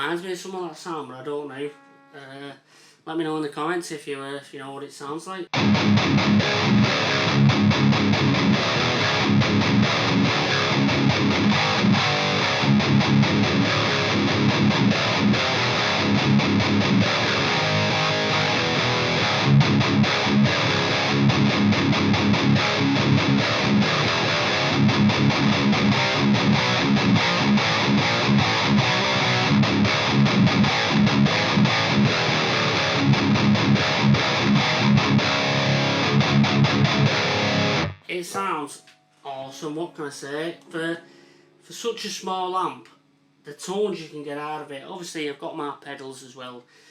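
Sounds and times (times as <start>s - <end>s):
distorted electric guitar riffing: 5.5s - 38.9s.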